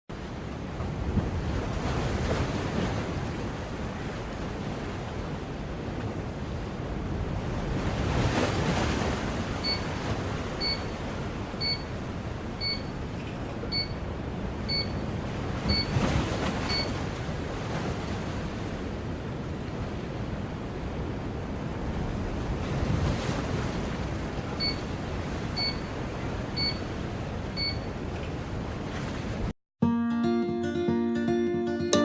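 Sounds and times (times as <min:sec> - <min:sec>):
alarm clock beeping: 0:14.7 - 0:15.0, 0:15.7 - 0:15.9.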